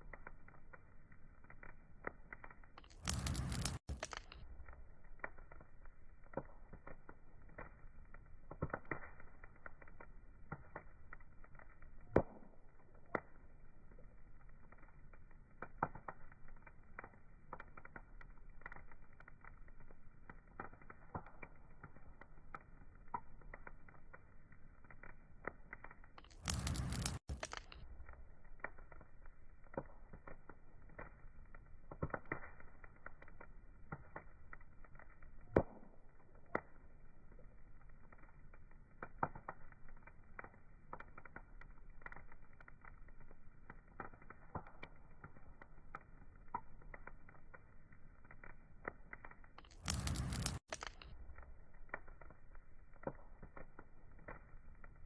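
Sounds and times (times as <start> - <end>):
wood fire crackling: 0.0 - 55.0.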